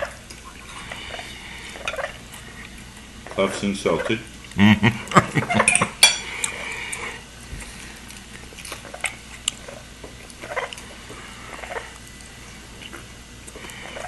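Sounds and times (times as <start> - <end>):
cutlery clinking on plates: 5.6 - 6.3.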